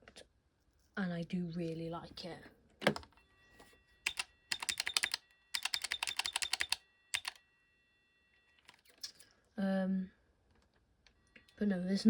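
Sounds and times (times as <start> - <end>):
faint high whine: 3.1 - 10.3
payphone pulse-dialling clicks: 4.0 - 7.4.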